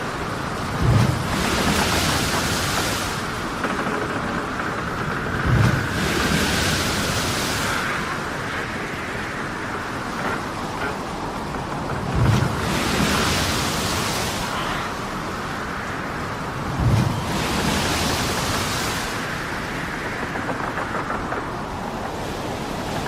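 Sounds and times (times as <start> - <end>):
hiss of breaking water: 0.0 - 11.4
rain: 0.0 - 23.0
surging water: 0.0 - 23.0
wind: 0.0 - 23.0.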